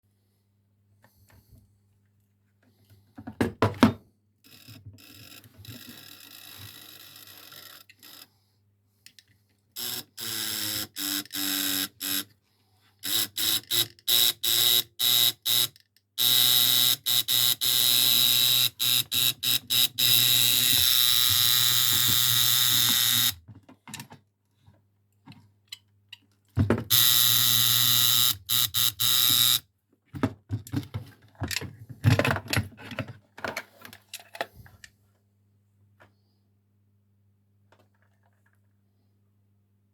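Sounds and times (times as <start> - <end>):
telephone buzzer buzzing: 9.8 - 12.3, 13.0 - 23.4, 26.9 - 29.6.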